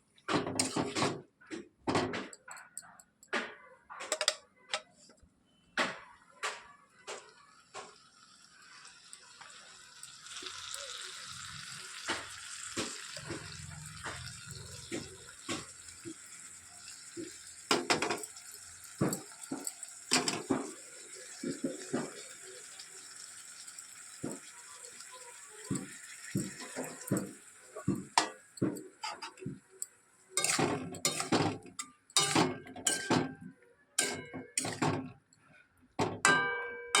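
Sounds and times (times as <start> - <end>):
metal utensils clinking: 0.4 - 1.2, 4.0 - 4.9, 12.2 - 22.3, 25.7 - 35.4, 36.0 - 37.0.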